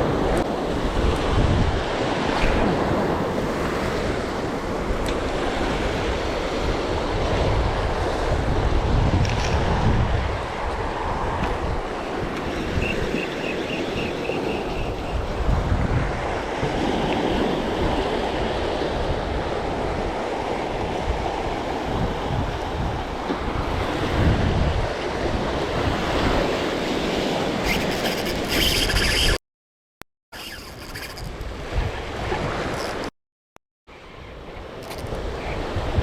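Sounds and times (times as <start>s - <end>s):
wind buffeting microphone: 0.0s - 27.8s, 34.2s - 36.0s
sea waves washing: 9.6s - 29.1s.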